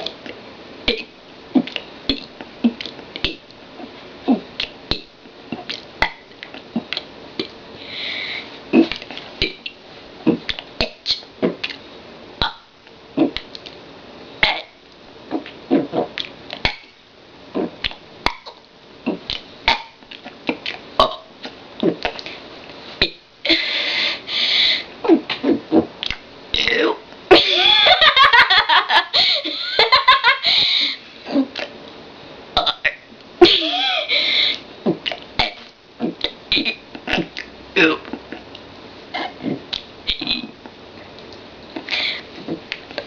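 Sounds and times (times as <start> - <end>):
girl burping: 36.5 - 38.2.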